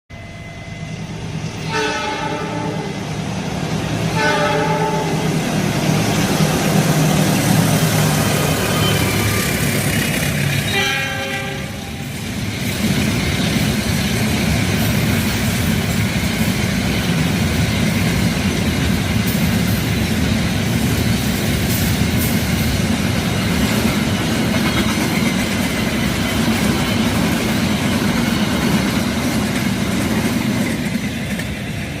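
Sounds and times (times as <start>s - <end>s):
train horn blast: 1.6s - 3.0s, 4.1s - 5.5s, 10.6s - 12.1s
wheels clacking over rail joints: 12.2s - 32.0s.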